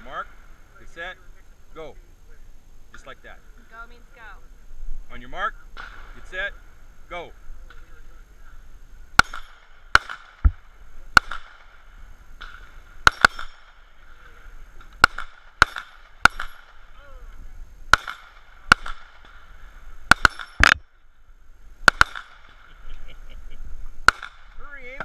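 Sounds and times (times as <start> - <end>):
pistol shots: 9.1 - 13.9, 15.0 - 16.9, 17.9 - 19.5, 20.1 - 20.8, 21.8 - 22.7, 24.0 - 24.6.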